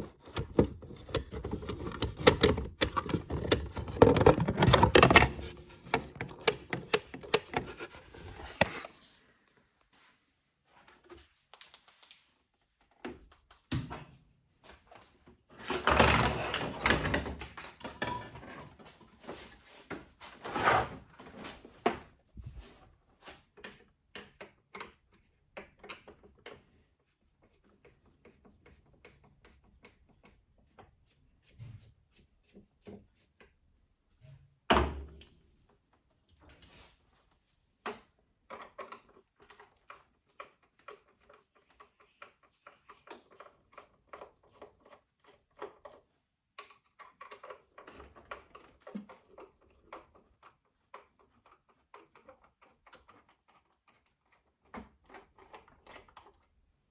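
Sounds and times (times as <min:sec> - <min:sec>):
tools clattering on work surface: 0:00.0 - 0:08.9.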